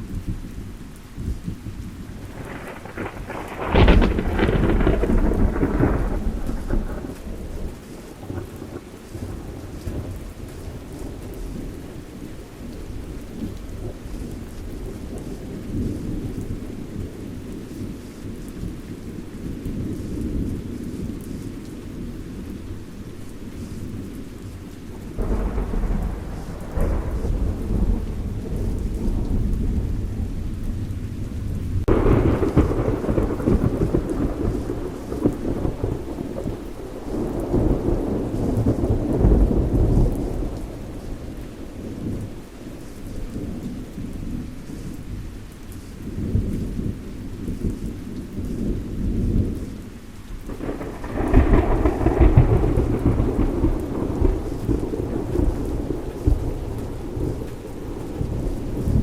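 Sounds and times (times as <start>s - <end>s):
rolling thunder: 0.0s - 45.3s, 46.1s - 59.0s
steady rain: 0.0s - 59.0s.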